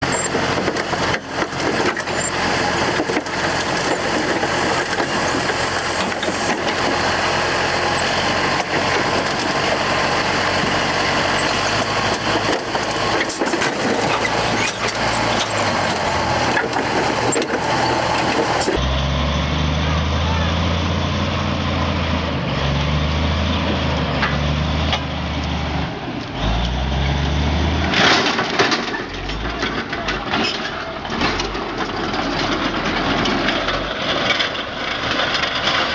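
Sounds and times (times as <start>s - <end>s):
machinery knocks and clanks: 0.0s - 18.8s, 27.8s - 35.9s
heavy engine droning: 0.0s - 35.9s
heavy machinery running: 0.0s - 35.9s.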